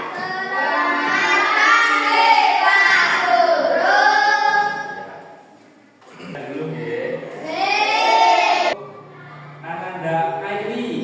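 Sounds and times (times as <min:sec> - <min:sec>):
children chanting together: 0:00.0 - 0:05.1, 0:07.4 - 0:08.8.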